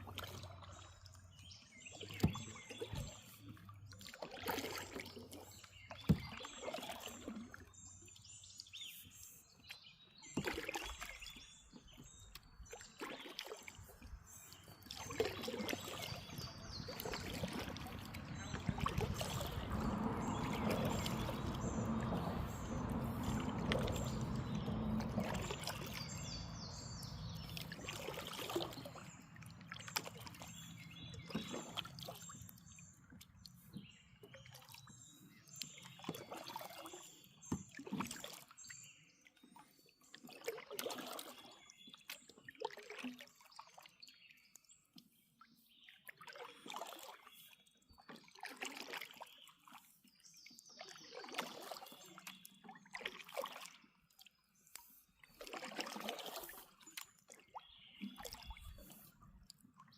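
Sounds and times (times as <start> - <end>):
water sloshing against kayak: 0.0 - 59.9
water rushing: 15.0 - 29.1.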